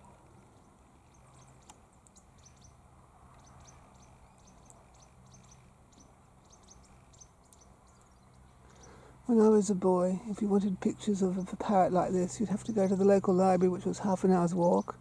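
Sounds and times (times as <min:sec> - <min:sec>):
faint bird chirps: 0:03.4 - 0:09.1.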